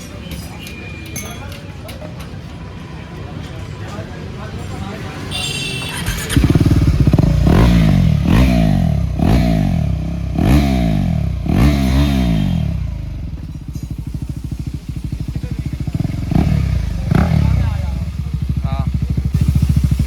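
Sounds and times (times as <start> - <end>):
motorcycle engine revving: 5.3 - 20.0.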